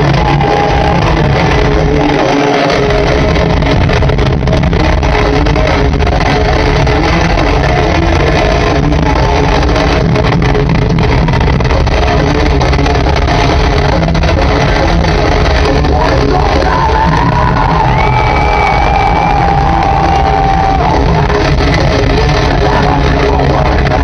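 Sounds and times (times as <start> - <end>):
heavy metal band playing live: 0.0 - 24.0.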